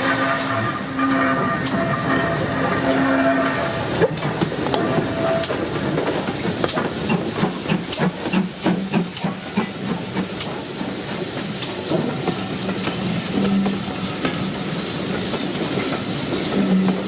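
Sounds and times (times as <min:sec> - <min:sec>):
steam hissing: 0:00.0 - 0:17.0
wheels clicking on rails: 0:03.8 - 0:17.0.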